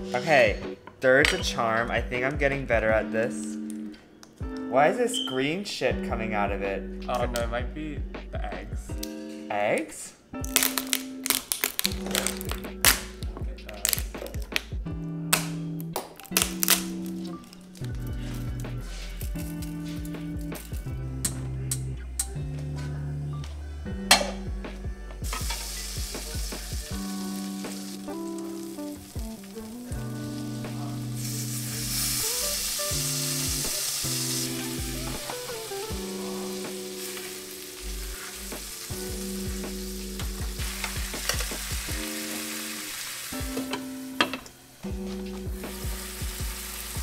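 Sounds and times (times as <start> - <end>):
background music: 0.0 - 47.0
food sizzling in a pan: 25.2 - 44.8, 45.6 - 47.0.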